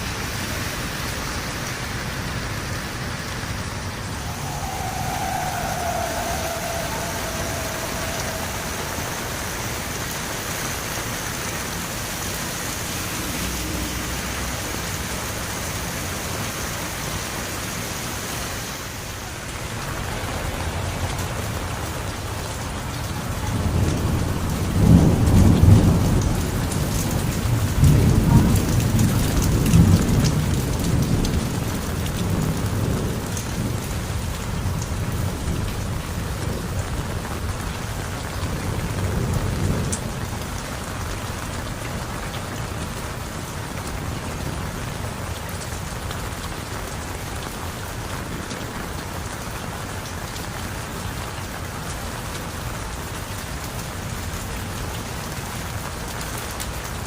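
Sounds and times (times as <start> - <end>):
heavy rain falling: 0.0 - 57.0
thunder rumbling: 0.8 - 15.1, 19.2 - 47.0.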